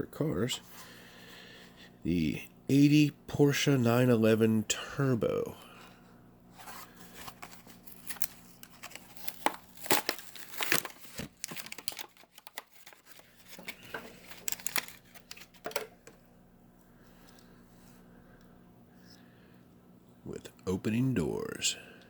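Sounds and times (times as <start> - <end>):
packaging crinkling and tearing: 6.6 - 15.8.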